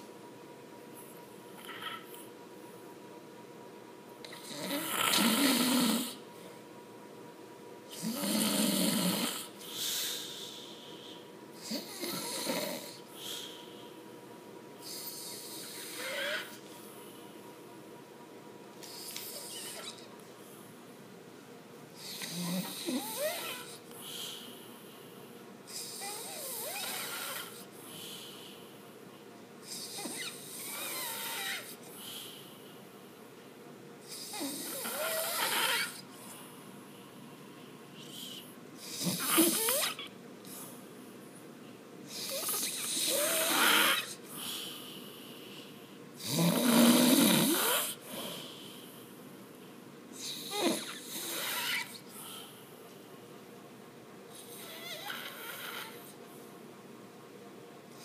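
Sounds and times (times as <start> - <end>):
person snoring: 4.4 - 6.2, 7.9 - 9.6, 14.9 - 16.6, 46.2 - 48.5
quiet breathing: 9.4 - 17.7, 21.9 - 33.3, 34.0 - 39.8, 40.4 - 46.2, 47.6 - 53.4.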